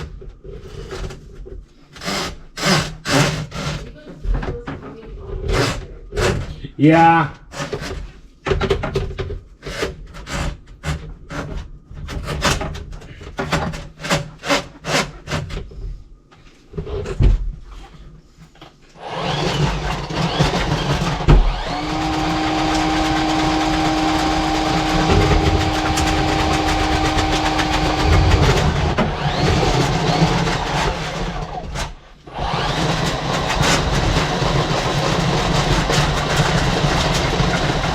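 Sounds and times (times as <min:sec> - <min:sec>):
tools and pipe knocking: 0:07.5 - 0:15.7, 0:20.2 - 0:32.0
drain snake motor running: 0:19.0 - 0:37.9
steady whine: 0:19.3 - 0:34.2.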